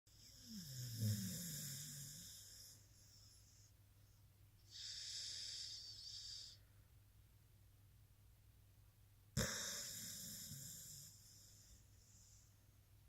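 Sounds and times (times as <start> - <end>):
dog snoring: 0.1 - 2.8, 9.4 - 11.7.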